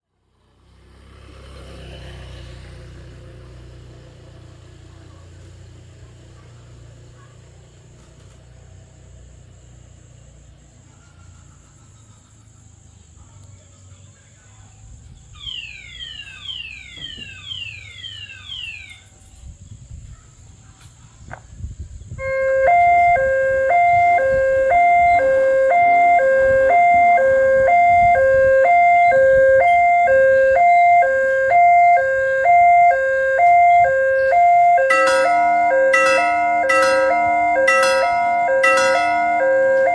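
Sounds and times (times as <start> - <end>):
low traffic rumble: 0.0 - 39.9
level crossing two-tone alarm: 15.4 - 19.1, 22.2 - 39.9
falling chirps: 15.4 - 19.2, 28.8 - 39.9.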